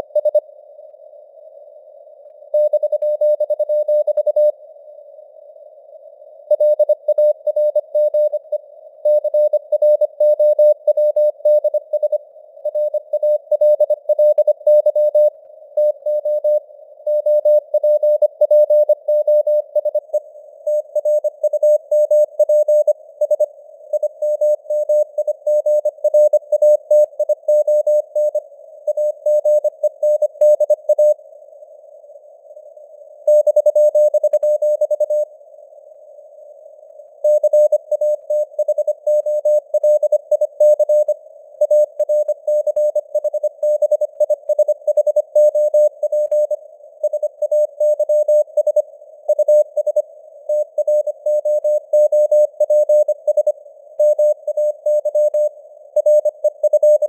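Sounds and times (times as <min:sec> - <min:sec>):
faint radio hiss: 0:00.0 - 0:02.5, 0:04.5 - 0:06.5, 0:16.6 - 0:17.7, 0:20.2 - 0:57.0.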